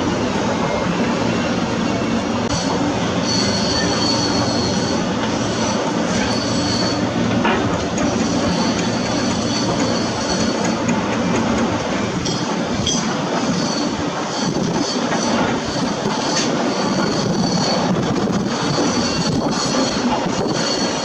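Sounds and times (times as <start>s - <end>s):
high metallic squeal: 0.7s - 7.2s, 8.0s - 10.8s, 13.5s - 21.0s.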